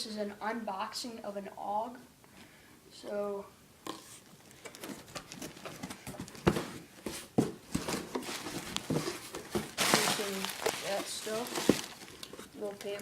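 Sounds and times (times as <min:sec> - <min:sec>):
cardboard box being handled: 0:04.8 - 0:12.5.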